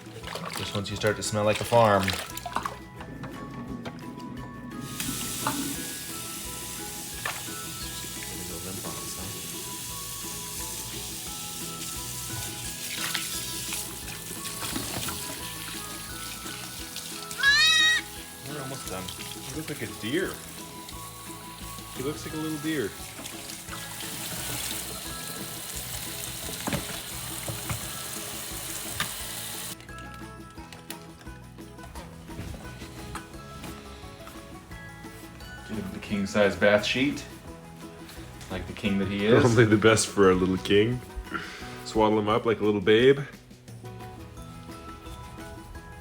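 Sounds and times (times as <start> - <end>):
water splash: 0.0 - 3.9, 12.4 - 20.5
soft background music: 0.0 - 46.0
water hissing: 3.3 - 29.8.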